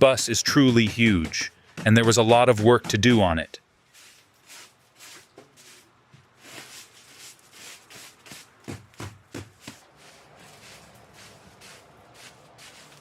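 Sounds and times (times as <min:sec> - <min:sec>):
swishing cleaning strokes: 0:03.9 - 0:08.7, 0:09.5 - 0:13.0
dull knocks: 0:08.6 - 0:09.8.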